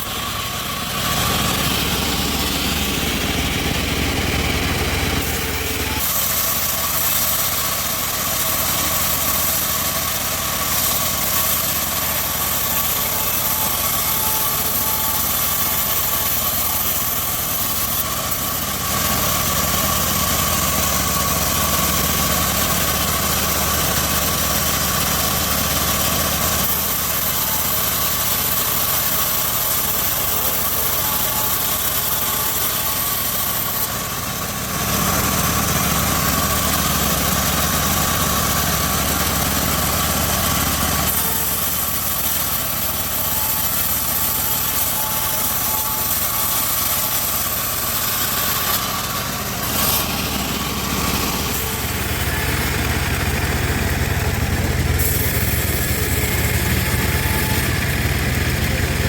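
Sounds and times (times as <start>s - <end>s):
bandsaw running: 0.0s - 59.0s.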